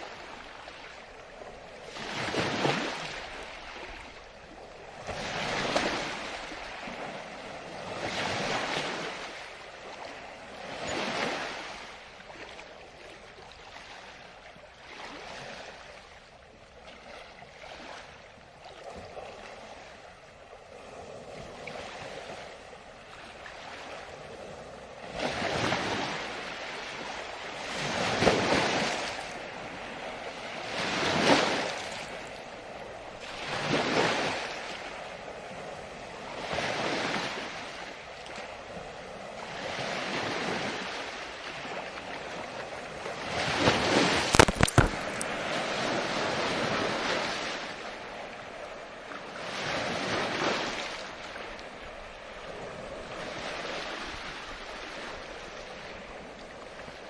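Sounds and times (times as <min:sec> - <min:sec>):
ocean surf waves: 0:00.0 - 0:16.2, 0:16.9 - 0:18.2, 0:19.3 - 0:57.0.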